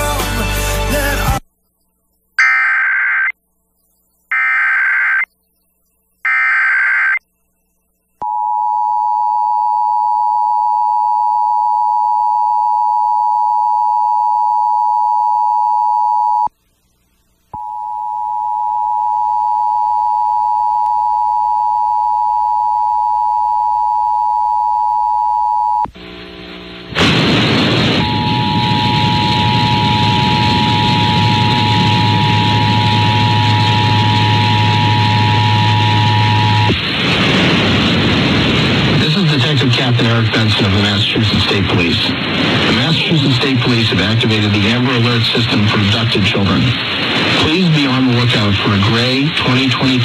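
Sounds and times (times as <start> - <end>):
loud hiss of noise: 26.0 - 50.0
screeching data bursts: 27.8 - 36.8
two-tone attention signal: 28.0 - 36.8.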